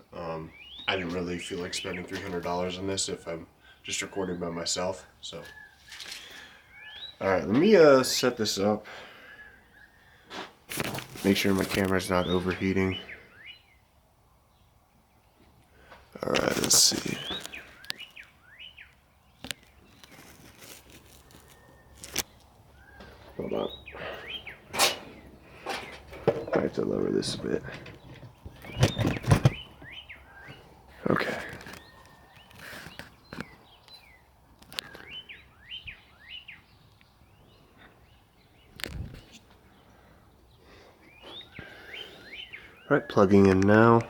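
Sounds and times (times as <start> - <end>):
birds chirping: 0.0 - 44.0.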